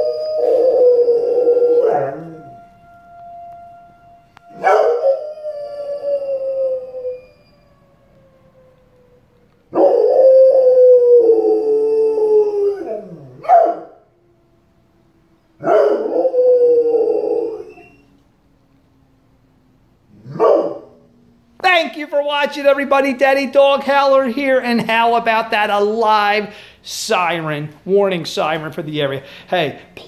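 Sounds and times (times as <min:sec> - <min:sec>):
dog howling: 0:00.0 - 0:02.6, 0:04.4 - 0:07.6, 0:09.7 - 0:13.9, 0:15.6 - 0:18.1
warning siren steady tone: 0:00.0 - 0:20.1.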